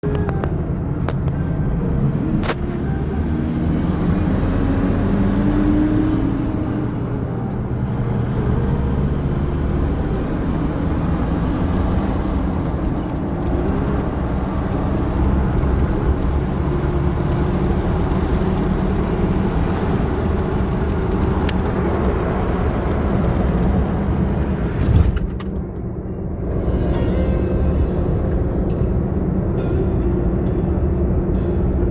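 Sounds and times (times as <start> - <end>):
turbocharged engine running: 0.0 - 25.4.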